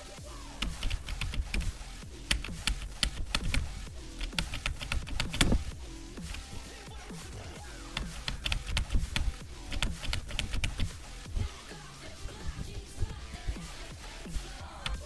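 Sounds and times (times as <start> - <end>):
computer keyboard typing clicks: 0.6 - 1.7, 2.3 - 5.7, 8.0 - 11.0.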